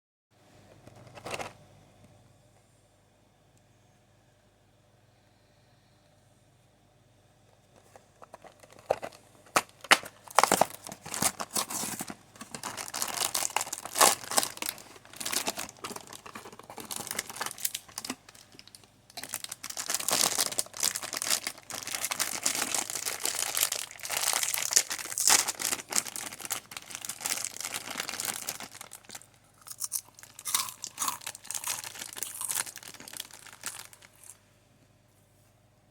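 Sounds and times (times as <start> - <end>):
plastic packaging crinkling: 7.9 - 34.4.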